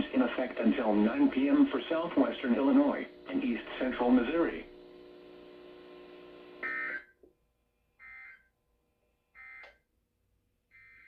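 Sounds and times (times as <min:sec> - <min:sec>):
faint steady hum: 0:00.0 - 0:07.1.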